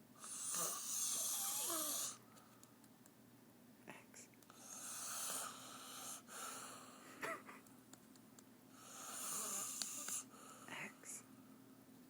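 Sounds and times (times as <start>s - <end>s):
woman snoring: 0.2s - 2.2s, 4.6s - 6.8s, 8.8s - 10.9s.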